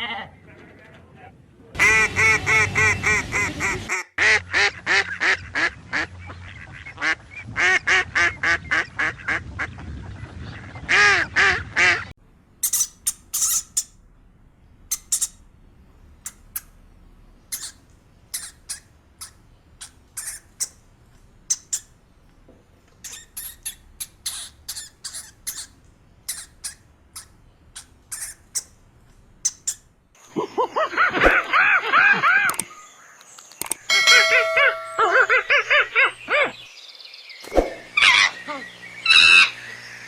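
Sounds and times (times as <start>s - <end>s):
ducks quacking: 1.8s - 9.8s, 17.5s - 20.8s, 23.0s - 28.8s
small animal squeaking: 12.6s - 14.0s, 14.9s - 15.4s, 17.5s - 20.8s, 21.5s - 21.9s, 23.0s - 28.8s, 29.4s - 29.9s.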